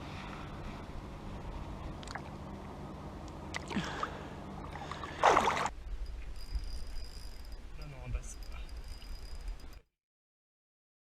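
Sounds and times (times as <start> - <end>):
steady low hum: 0.0 - 9.8
water splashing: 3.5 - 5.7.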